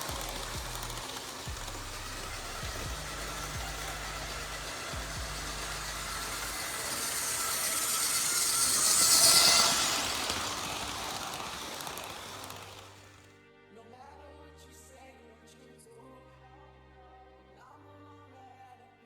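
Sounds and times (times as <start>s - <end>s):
model train running on track: 0.0s - 13.3s.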